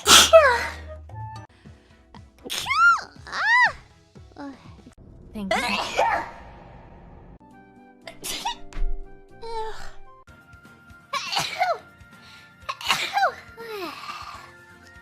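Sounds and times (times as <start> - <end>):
young woman sneezing: 0.0 - 0.7, 12.7 - 13.4
faint background music: 0.0 - 6.1, 8.1 - 15.0.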